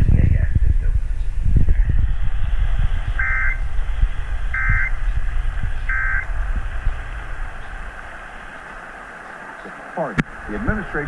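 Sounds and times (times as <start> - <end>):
radio static hiss: 0.1 - 11.0
buzzy digital data tones: 0.8 - 8.1.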